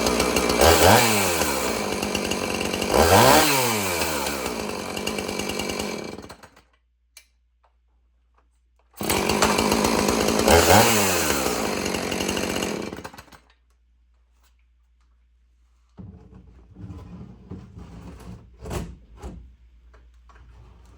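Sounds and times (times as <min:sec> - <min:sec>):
two-stroke chainsaw running: 0:00.0 - 0:06.6, 0:09.0 - 0:13.4.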